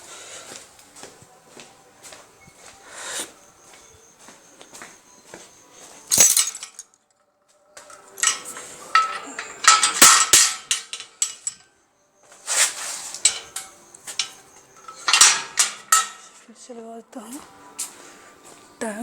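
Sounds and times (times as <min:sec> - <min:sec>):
metallic clinking and clattering: 0:06.1 - 0:07.0, 0:07.8 - 0:11.7, 0:12.5 - 0:16.5.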